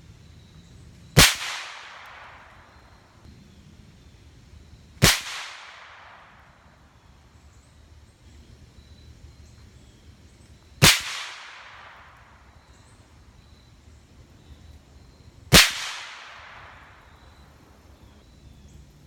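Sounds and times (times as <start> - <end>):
rifle shot echoing: 1.2 - 2.9, 5.0 - 6.6, 10.8 - 12.7, 15.5 - 17.4.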